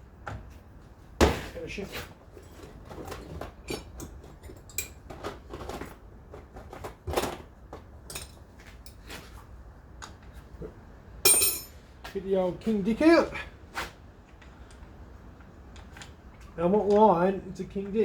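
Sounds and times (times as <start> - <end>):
metal tools clinking together: 8.1 - 9.0, 11.3 - 11.8.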